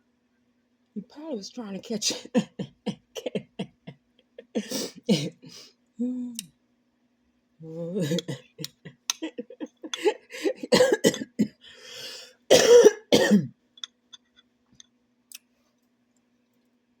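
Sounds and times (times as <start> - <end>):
person coughing: 2.0 - 5.5, 8.0 - 11.6, 12.5 - 13.5
person clearing throat: 8.0 - 11.6, 12.5 - 13.5.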